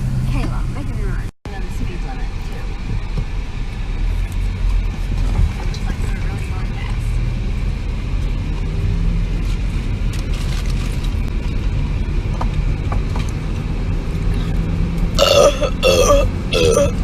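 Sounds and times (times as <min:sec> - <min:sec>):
car cabin road and engine noise: 0:00.0 - 0:17.0
loud burps: 0:15.2 - 0:17.0.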